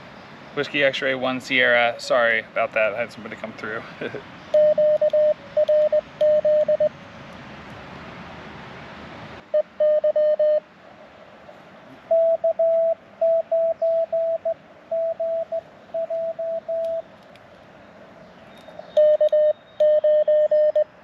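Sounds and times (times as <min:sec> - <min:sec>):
radio band noise hiss: 0:00.0 - 0:05.6
morse code beeps: 0:04.5 - 0:06.9, 0:09.5 - 0:10.6, 0:12.1 - 0:17.0, 0:19.0 - 0:21.0.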